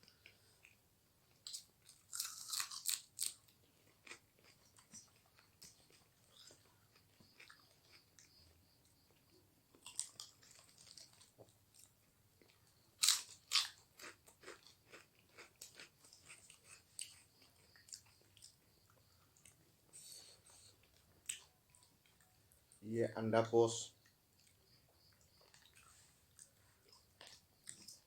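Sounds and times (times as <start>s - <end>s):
loud crunchy bites: 1.5s - 3.4s, 13.0s - 16.4s
wet chewing: 9.8s - 22.3s.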